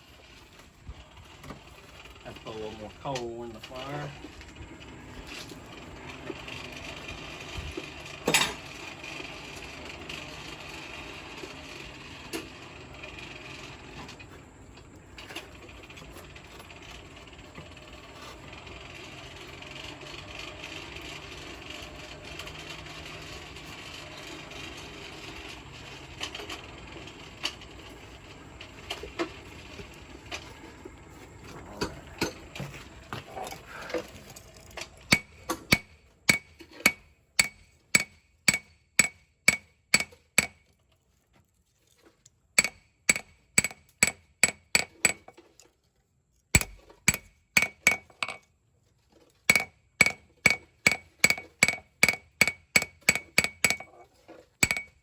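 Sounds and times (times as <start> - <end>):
hammer ringing on anvil: 35.1 - 40.6, 42.6 - 45.2, 49.5 - 53.9, 54.6 - 55.0
metal clinks: 49.5 - 54.0, 54.6 - 55.0.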